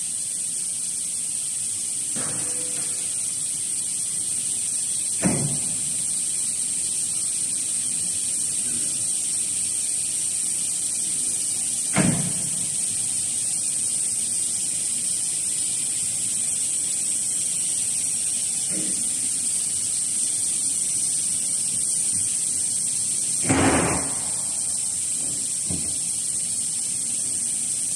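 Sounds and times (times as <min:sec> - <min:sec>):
cnc router whine and hiss: 0:00.0 - 0:27.9
sharp knock: 0:23.4 - 0:24.4.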